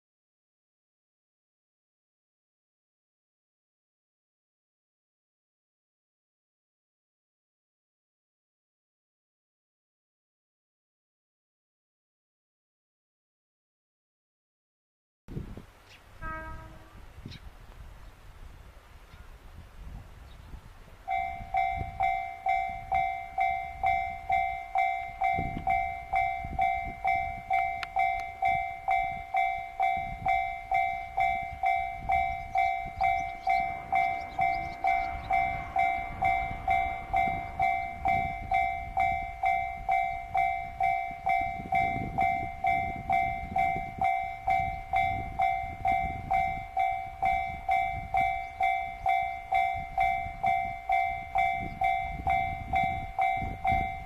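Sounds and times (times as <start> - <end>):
level crossing warning bell ringing: 21.1 - 54.0.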